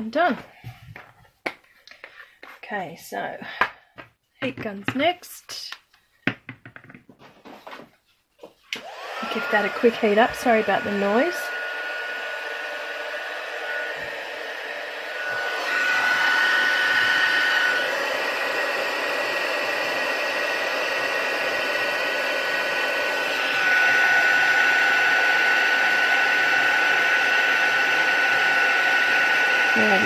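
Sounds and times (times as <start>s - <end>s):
heat gun blowing with whine: 8.7s - 30.0s.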